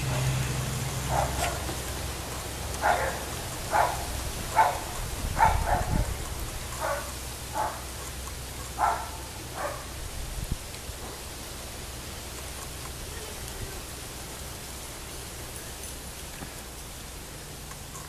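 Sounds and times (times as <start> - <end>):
distant dog barking: 1.0 - 1.8, 2.7 - 8.0, 8.8 - 10.0.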